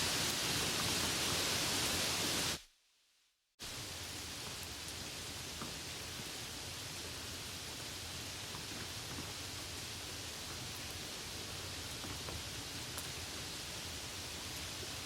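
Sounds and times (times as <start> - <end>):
heavy rain hiss: 0.0 - 2.6, 3.6 - 15.0
soft rain with drop ticks: 3.6 - 15.0.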